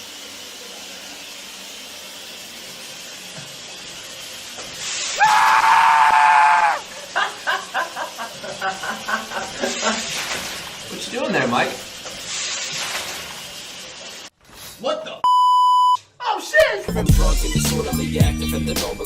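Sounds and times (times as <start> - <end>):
steady hiss: 0.0 - 14.9
person screaming: 5.2 - 6.9.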